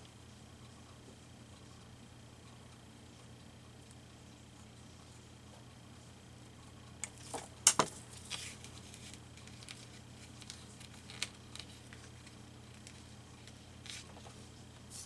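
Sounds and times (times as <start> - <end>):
low steady hum: 0.0 - 15.0
craft tools and paper tapping: 7.0 - 14.4.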